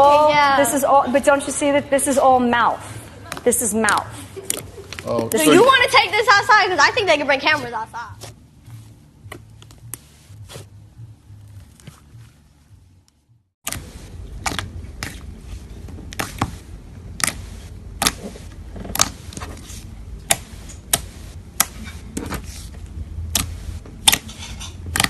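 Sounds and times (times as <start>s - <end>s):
low rumble: 22.8s - 24.0s.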